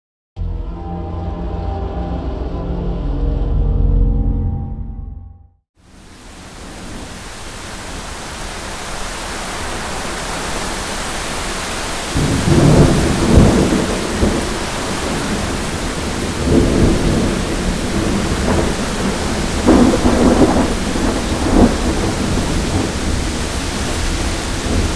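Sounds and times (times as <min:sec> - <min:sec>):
steady rain: 0:05.8 - 0:24.9
rolling thunder: 0:12.2 - 0:24.9.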